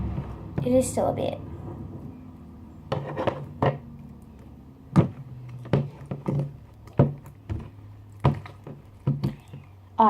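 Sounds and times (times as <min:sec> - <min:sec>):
slime slapping in a bowl: 0:04.9 - 0:09.6.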